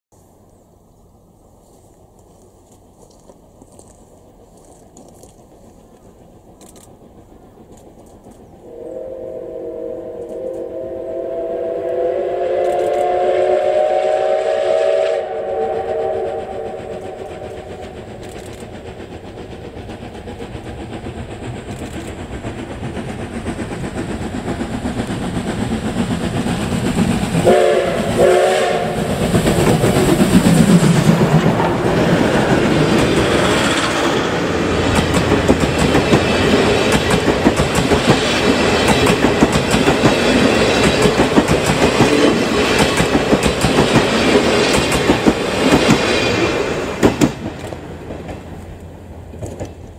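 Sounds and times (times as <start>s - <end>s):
train running noise: 0.2s - 49.9s
steam locomotive chime whistle: 8.6s - 17.8s, 27.4s - 29.2s.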